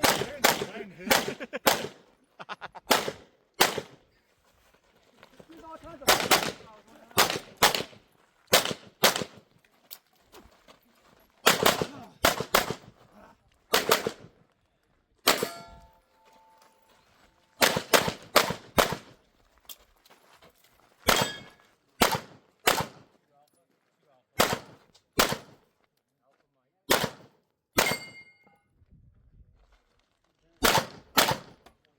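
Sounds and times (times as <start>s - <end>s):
pistol shots: 0.0s - 2.0s, 2.9s - 4.0s, 6.0s - 9.4s, 11.4s - 12.9s, 13.7s - 14.3s, 15.3s - 15.7s, 17.6s - 19.1s, 21.1s - 23.0s, 24.4s - 25.6s, 26.9s - 28.2s, 30.6s - 31.6s
metallic ring: 15.4s - 16.8s, 27.8s - 28.6s.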